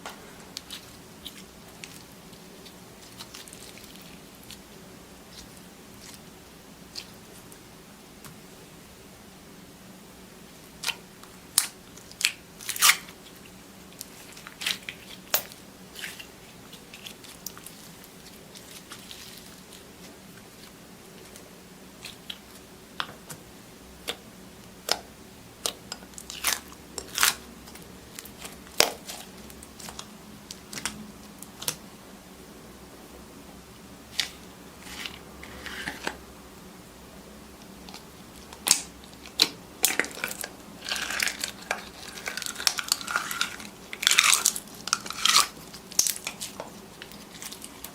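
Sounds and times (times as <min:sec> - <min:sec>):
faint low hum: 0:00.0 - 0:47.9
slime popping and crackling: 0:37.8 - 0:47.9.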